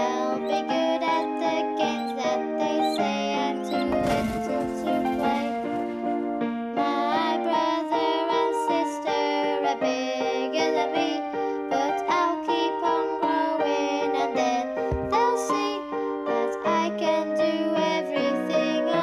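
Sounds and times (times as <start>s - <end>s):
children's television theme tune: 0.2s - 6.4s.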